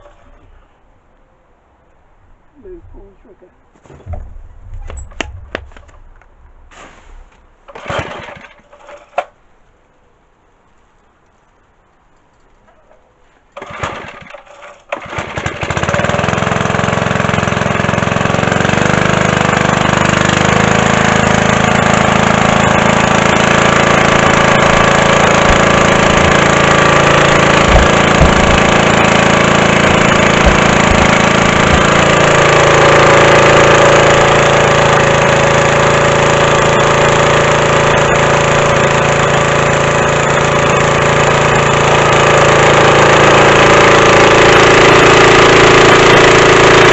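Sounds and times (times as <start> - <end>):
low knocks: 3.9 - 6.7, 27.6 - 29.2, 29.8 - 32.1
small petrol engine starting and running: 7.7 - 9.4, 13.6 - 46.9.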